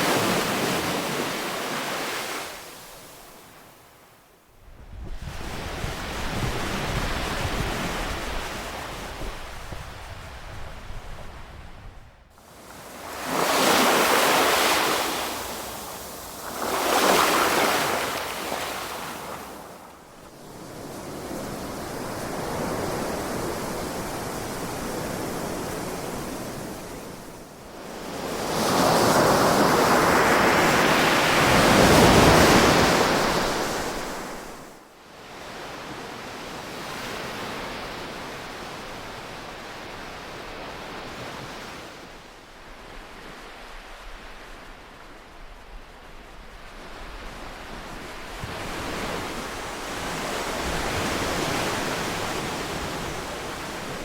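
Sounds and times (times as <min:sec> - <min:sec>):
ocean waves washing ashore: 0:00.0 - 0:54.0.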